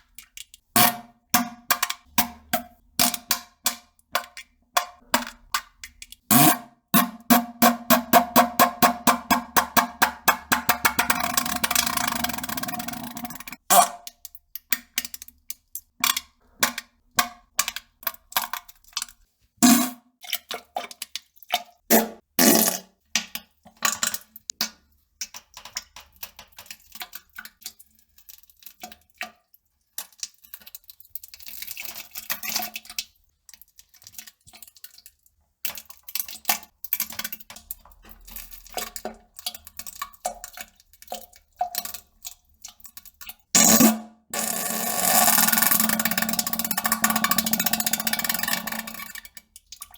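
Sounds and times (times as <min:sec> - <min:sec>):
sputtering fart: 0:21.9 - 0:22.8, 0:43.6 - 0:45.8.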